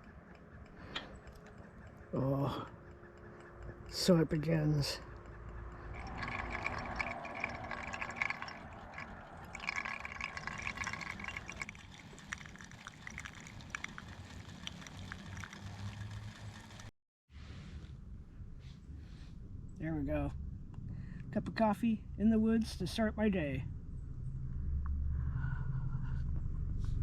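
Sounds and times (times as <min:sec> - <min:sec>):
espresso maker gurgling: 0:05.8 - 0:16.9.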